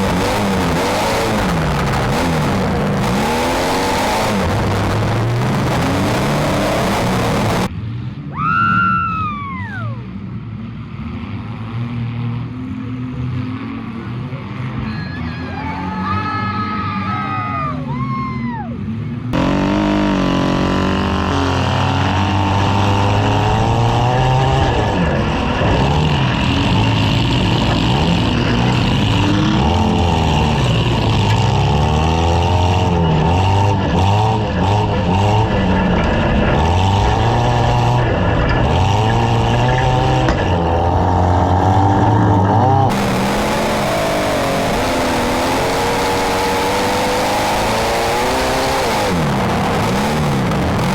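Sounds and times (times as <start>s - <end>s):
car engines revving: 0.0s - 8.3s, 10.0s - 50.9s.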